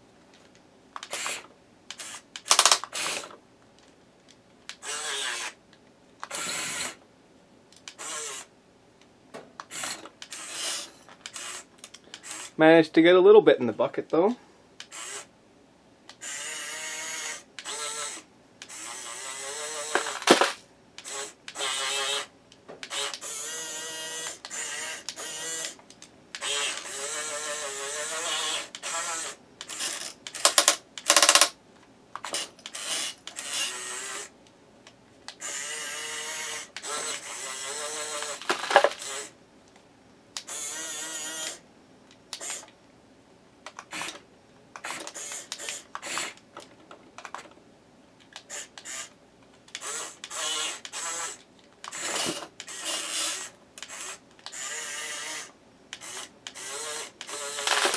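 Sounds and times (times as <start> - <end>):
small electric motors whining: 4.8 - 5.6, 6.3 - 7.0, 7.9 - 8.5, 9.7 - 12.6, 14.8 - 15.3, 16.1 - 22.3, 22.9 - 25.8, 26.4 - 31.5, 32.2 - 34.3, 35.3 - 39.4, 40.4 - 41.6, 42.4 - 42.7, 44.8 - 46.4, 48.4 - 49.1, 49.7 - 57.9.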